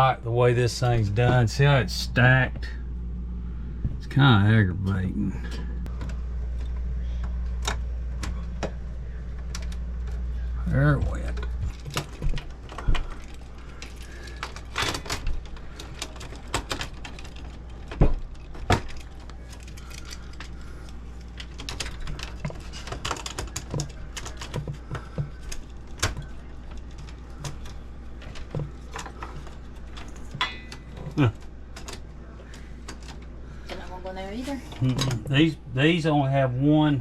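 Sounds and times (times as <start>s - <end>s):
low steady hum: 0.0s - 37.0s
clicks and metallic knocks: 21.4s - 32.0s.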